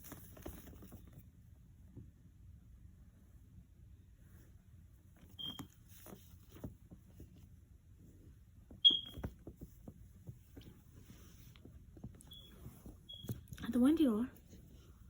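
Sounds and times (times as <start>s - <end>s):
soft taps and scuffles: 4.3s - 13.6s.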